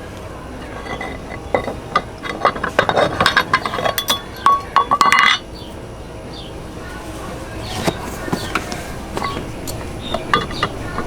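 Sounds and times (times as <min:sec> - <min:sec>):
metal parts and tools clinking: 0:00.6 - 0:05.5, 0:08.3 - 0:11.0.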